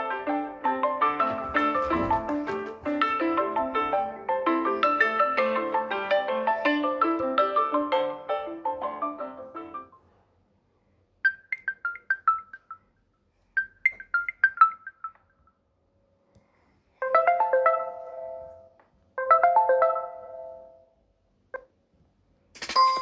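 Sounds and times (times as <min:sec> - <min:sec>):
marimba-like ringtone tune: 0:11.3 - 0:12.8, 0:13.6 - 0:15.3.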